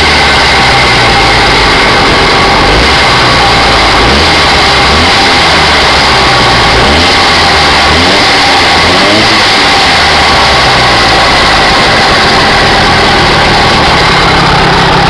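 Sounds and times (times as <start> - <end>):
high-pitched whine: 0.0 - 15.0
small motorbike engine revving: 0.0 - 15.0.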